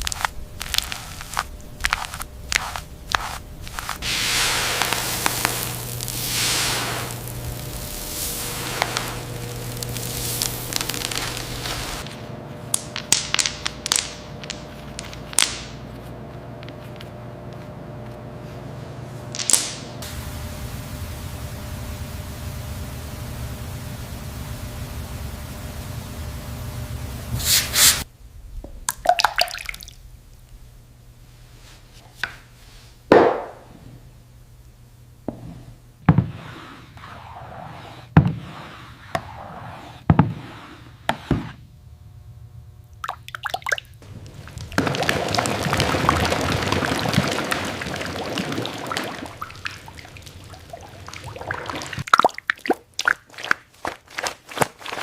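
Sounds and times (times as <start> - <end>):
liquid pouring: 0.0 - 12.1, 28.8 - 30.0, 43.0 - 55.0
steady rushing noise with hum: 0.0 - 13.2
liquid dripping: 28.8 - 30.4, 42.8 - 55.0.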